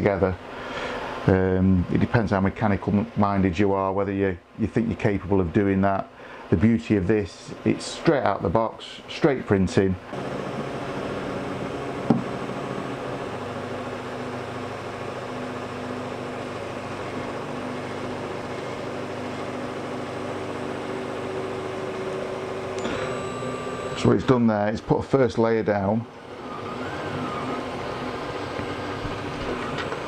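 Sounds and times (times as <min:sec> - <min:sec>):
three d printer motor whir: 0:10.1 - 0:24.4, 0:26.1 - 0:30.0.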